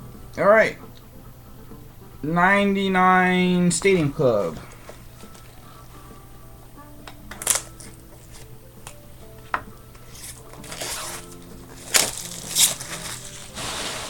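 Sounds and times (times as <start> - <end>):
soft background music: 0.0 - 14.0
cardboard and wrapper crackling: 7.3 - 9.0, 10.0 - 14.0
packaging rustling: 7.3 - 9.0, 10.0 - 14.0.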